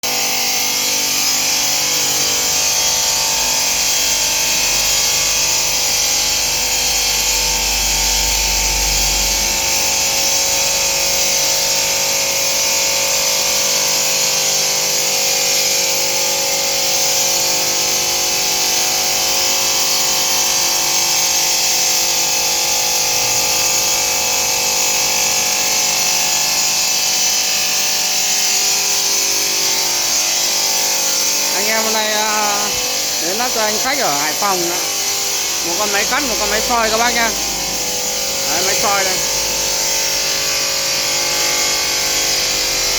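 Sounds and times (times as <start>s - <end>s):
machine whine: 0.0s - 42.9s
stone grinding machine hiss: 0.0s - 42.9s
low rumble: 36.3s - 38.5s.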